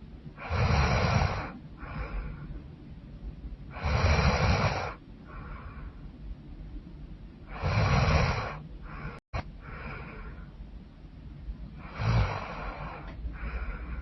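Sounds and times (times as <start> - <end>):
woman snoring: 0.4 - 2.1, 3.7 - 5.0, 7.5 - 9.2, 11.8 - 13.7
breathy exhale: 0.4 - 2.7, 3.7 - 6.1, 7.5 - 10.6, 11.8 - 14.0.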